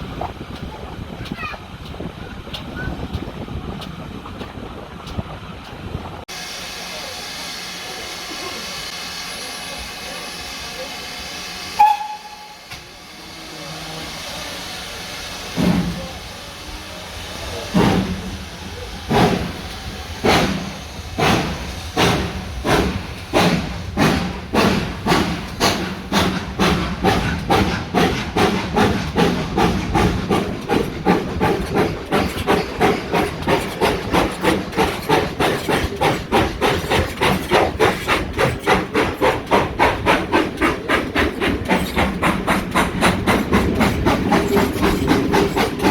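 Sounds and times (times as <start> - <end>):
steam hissing: 6.3 - 45.9
locomotive whistle toot: 11.8 - 12.7
chimney exhaust beats: 19.0 - 45.9.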